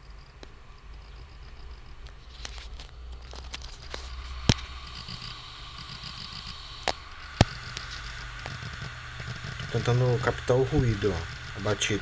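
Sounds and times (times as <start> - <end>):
hard drive spinning hum: 0.0 - 12.0
sharp knocks from hard drive: 4.2 - 12.0.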